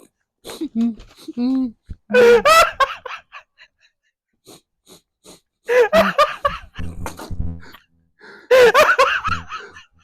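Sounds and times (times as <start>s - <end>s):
man laughing and choking: 0.0s - 3.6s, 4.4s - 7.9s, 8.5s - 10.0s.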